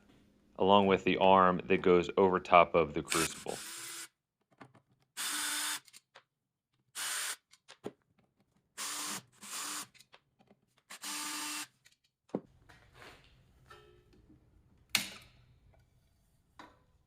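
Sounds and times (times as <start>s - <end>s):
power drill bursts: 5.2s - 5.9s, 7.0s - 7.4s, 8.8s - 9.9s, 10.9s - 11.7s.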